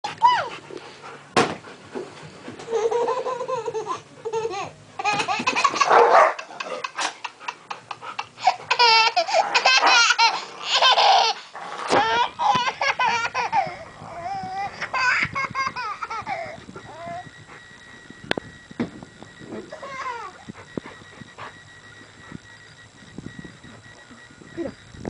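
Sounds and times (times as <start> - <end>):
baby giggling and laughing: 2.7 - 16.6.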